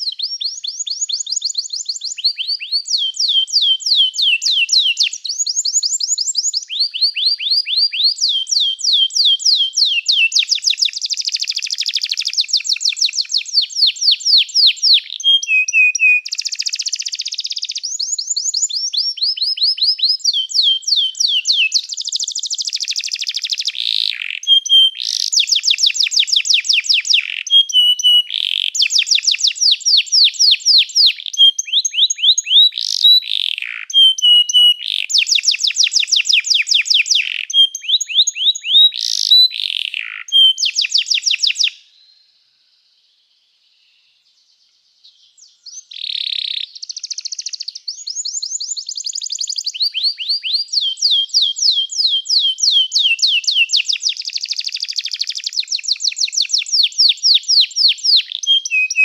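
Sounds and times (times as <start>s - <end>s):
canary singing trills: 0.0s - 41.9s, 45.0s - 59.0s.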